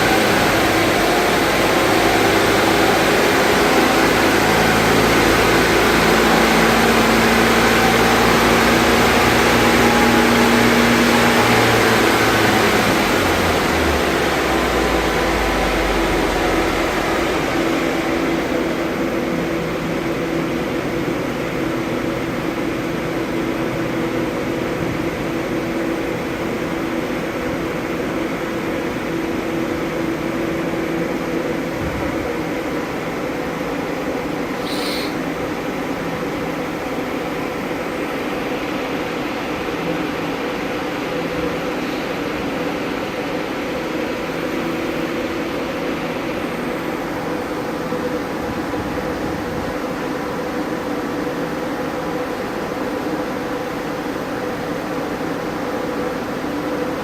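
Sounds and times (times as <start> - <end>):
car engine revving: 0.0 - 19.4
rollers and cooling fan whirring: 0.0 - 57.0.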